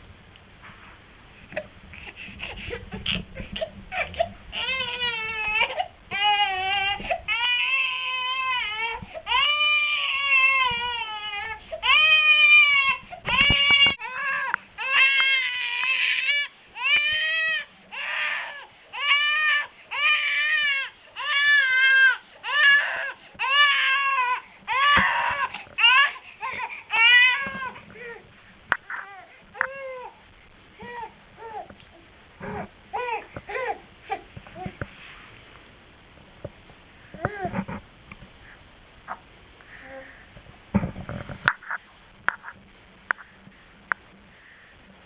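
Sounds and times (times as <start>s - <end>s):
baby crying: 3.0s - 28.2s, 28.8s - 30.2s, 32.9s - 34.3s.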